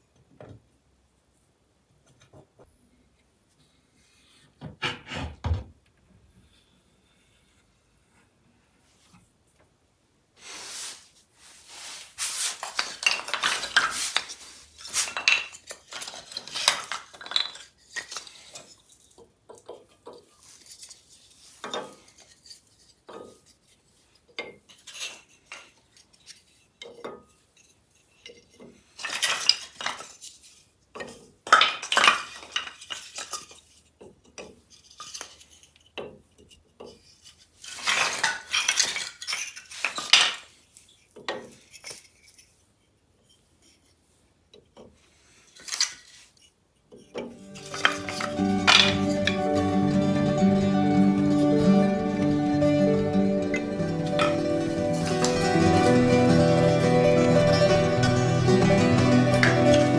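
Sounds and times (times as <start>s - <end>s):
metal parts clinking and scraping: 10.8s - 19.1s, 47.6s - 49.6s.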